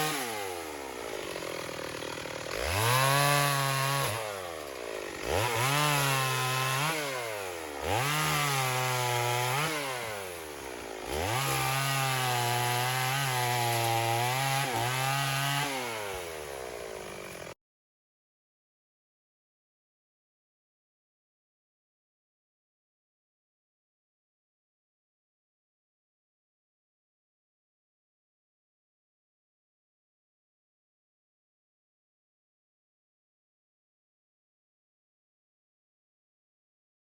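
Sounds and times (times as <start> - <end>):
chainsaw cutting wood: 0.0 - 17.6.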